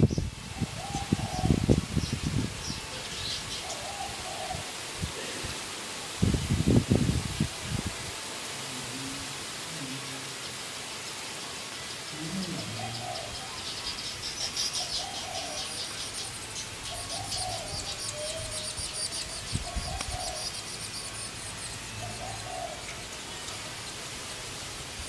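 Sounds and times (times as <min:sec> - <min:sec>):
dove cooing: 0:00.7 - 0:01.6, 0:03.7 - 0:05.6, 0:12.1 - 0:13.8, 0:14.8 - 0:16.0, 0:16.9 - 0:18.7, 0:19.6 - 0:20.7, 0:22.0 - 0:23.0
birds chattering: 0:11.8 - 0:22.9.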